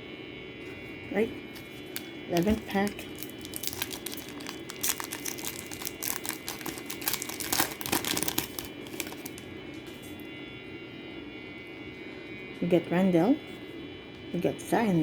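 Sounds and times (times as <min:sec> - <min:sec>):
plastic wrapper tearing and crinkling: 0:01.5 - 0:09.5.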